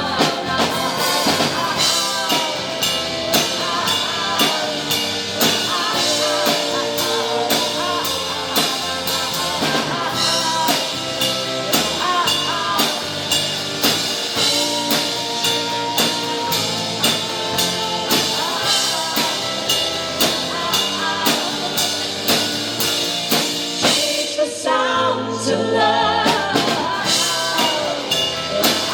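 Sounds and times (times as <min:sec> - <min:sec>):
drum kit beat: 0:00.0 - 0:24.4, 0:26.3 - 0:28.9
melodic lead line: 0:00.0 - 0:24.4, 0:26.4 - 0:28.9.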